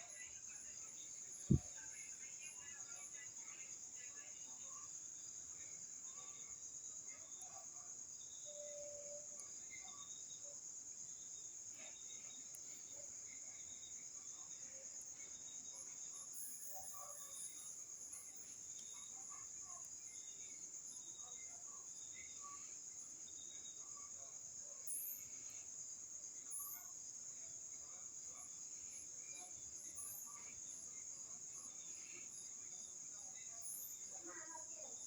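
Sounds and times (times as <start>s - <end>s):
crickets trilling: 0.0s - 35.0s.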